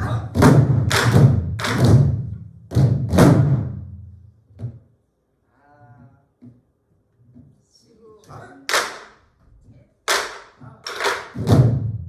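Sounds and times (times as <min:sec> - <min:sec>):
barrel drums struck in unison: 0:00.0 - 0:04.0, 0:11.2 - 0:12.0.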